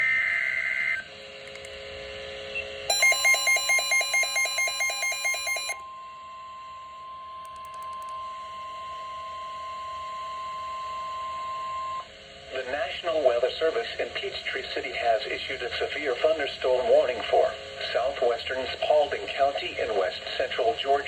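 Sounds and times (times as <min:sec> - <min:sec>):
alarm beeping: 0:02.9 - 0:05.8
steady warning alarm tone: 0:02.9 - 0:07.4.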